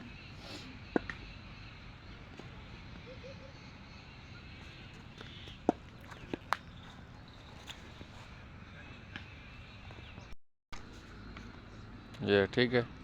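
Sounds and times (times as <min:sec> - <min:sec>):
low outdoor background noise: 0:00.0 - 0:13.0
cricket bat striking ball: 0:05.3 - 0:06.6.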